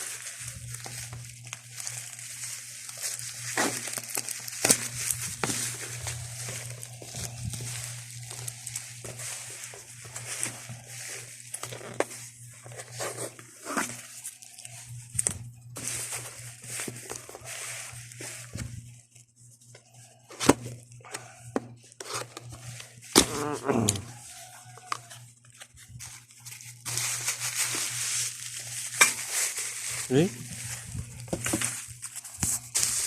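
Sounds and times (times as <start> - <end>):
packaging handling clicks and rustles: 0.0 - 19.0
steady low hum: 0.0 - 24.3.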